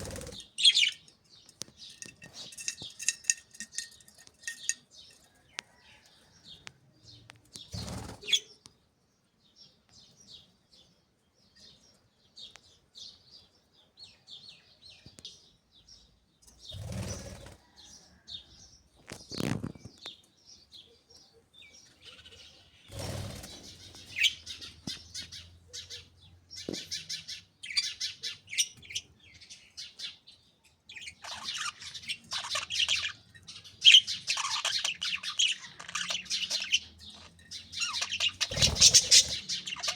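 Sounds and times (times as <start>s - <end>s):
wing flapping: 0.0s - 0.6s, 22.9s - 24.0s, 38.4s - 39.5s
budgerigars chirping: 0.0s - 1.2s, 30.9s - 39.9s.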